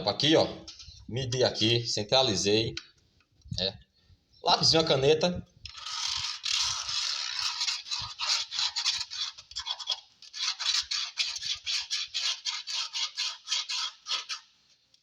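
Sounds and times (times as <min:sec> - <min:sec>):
pen scratching on box: 0:05.7 - 0:14.5.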